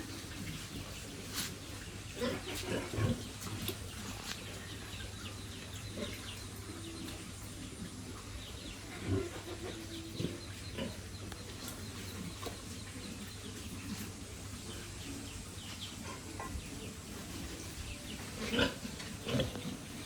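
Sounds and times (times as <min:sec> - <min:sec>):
small birds chirping: 0:00.0 - 0:20.0
pigs grunting: 0:01.9 - 0:04.4, 0:05.7 - 0:07.0, 0:07.6 - 0:11.3, 0:13.8 - 0:20.0.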